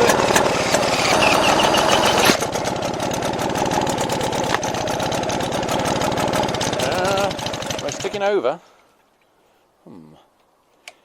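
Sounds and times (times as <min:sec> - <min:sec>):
outboard motor running: 0:00.0 - 0:08.2.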